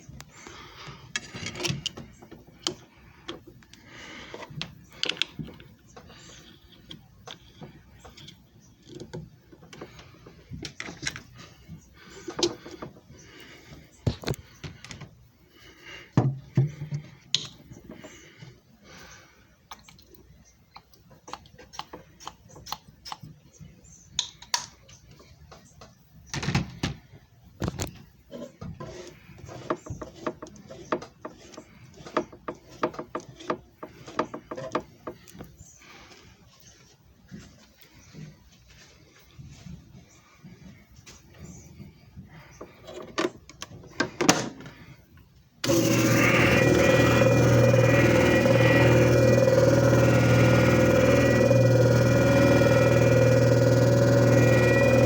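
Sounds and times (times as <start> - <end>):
objects handled clicking and knocking: 0.2 - 11.4, 19.7 - 23.4.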